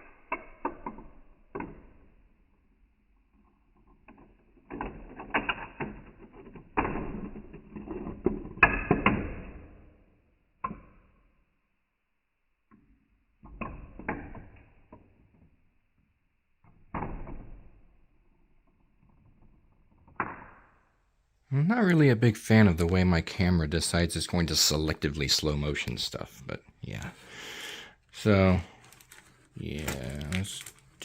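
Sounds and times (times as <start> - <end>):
marbles clattering through wooden track: 3.5 - 9.6, 28.2 - 31.0.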